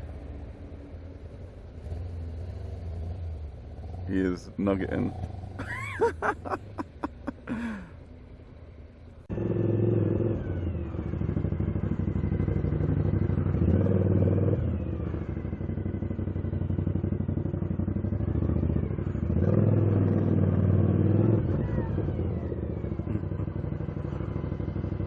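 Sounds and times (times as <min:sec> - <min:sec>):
motorcycle engine running: 0:10.6 - 0:19.4, 0:21.4 - 0:25.0.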